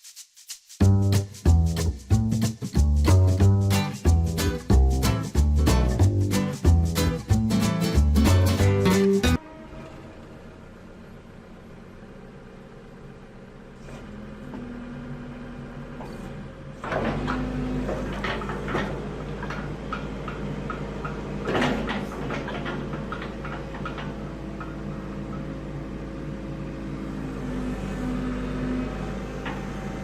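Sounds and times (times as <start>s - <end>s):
diesel engine starting and idling: 7.3s - 30.0s.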